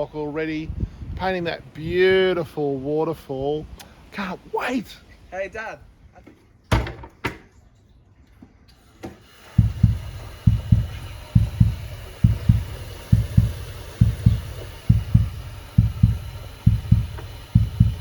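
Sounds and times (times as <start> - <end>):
heartbeat double thumps: 9.4 - 18.0.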